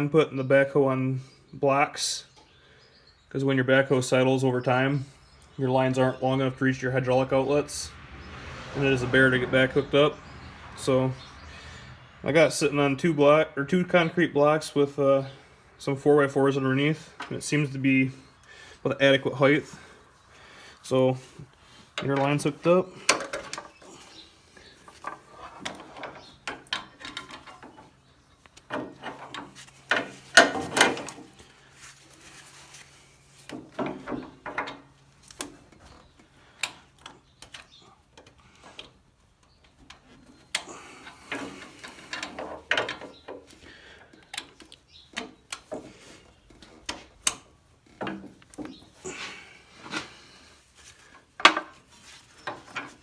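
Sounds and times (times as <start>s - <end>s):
hydraulic hoses clicking and knocking: 21.5s - 31.5s, 33.5s - 50.4s.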